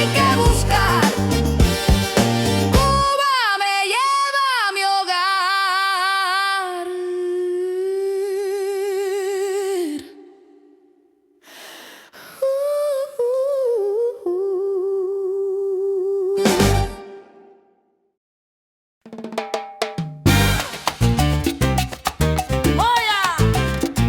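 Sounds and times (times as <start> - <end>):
person singing wordless notes: 0.0 - 1.3.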